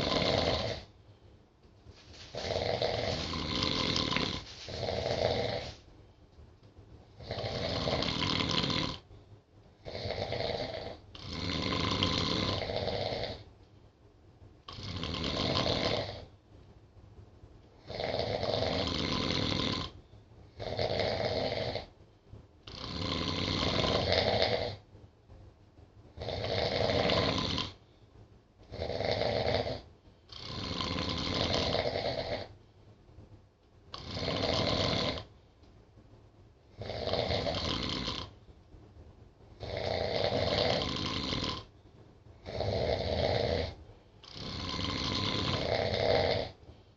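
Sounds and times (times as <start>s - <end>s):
people snoring: 0.0s - 0.9s, 2.3s - 5.8s, 7.2s - 9.0s, 9.8s - 13.4s, 14.7s - 16.3s, 17.8s - 20.0s, 20.6s - 21.9s, 22.7s - 24.8s, 26.2s - 27.8s, 28.7s - 32.5s, 34.0s - 35.3s, 36.8s - 38.3s, 39.6s - 41.7s, 42.4s - 46.6s
quiet breaths: 0.0s - 16.7s, 17.4s - 25.4s, 26.0s - 46.9s.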